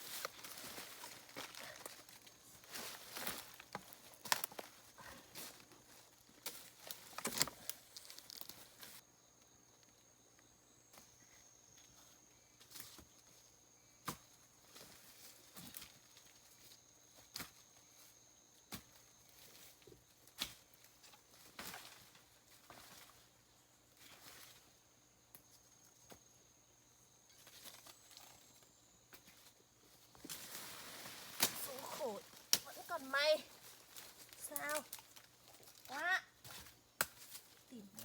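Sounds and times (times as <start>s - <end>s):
rustling in undergrowth: 0.0s - 9.0s, 14.3s - 24.9s, 25.5s - 38.0s
twig snaps: 32.3s - 32.7s.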